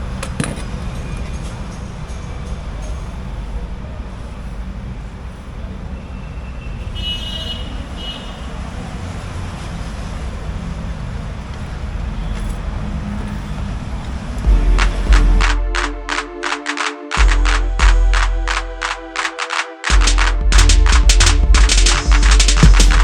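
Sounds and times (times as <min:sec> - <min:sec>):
road traffic noise: 0:00.0 - 0:23.0
vehicle horn tooting: 0:06.4 - 0:08.6.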